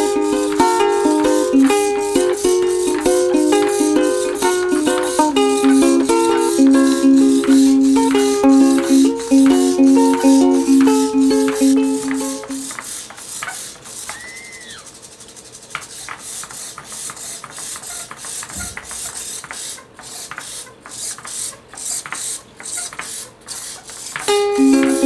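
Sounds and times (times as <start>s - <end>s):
robot gear motor rasping: 12.0s - 24.9s.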